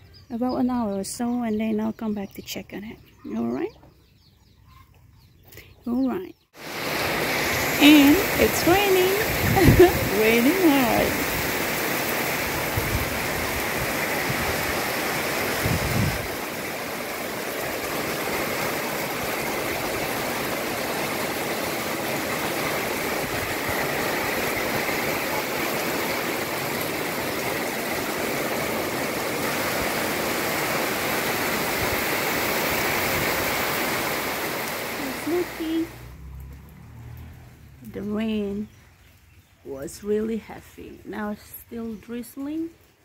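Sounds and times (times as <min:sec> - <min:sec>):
heavy rain pouring: 0:06.6 - 0:39.2.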